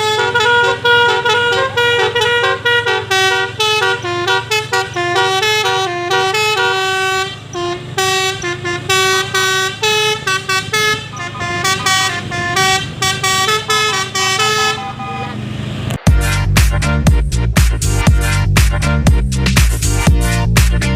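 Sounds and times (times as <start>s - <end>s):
air horn trumpets playing melody: 0.0s - 15.3s.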